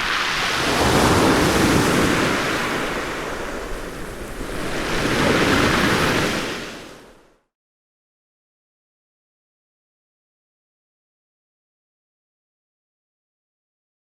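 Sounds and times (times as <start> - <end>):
ocean waves washing onto beach: 0.0 - 7.4.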